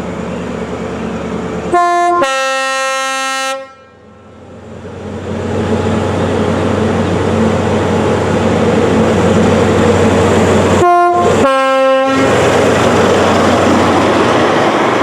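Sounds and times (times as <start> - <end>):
train running noise: 0.0 - 15.0
two-tone train horn: 1.7 - 4.1, 10.8 - 12.4.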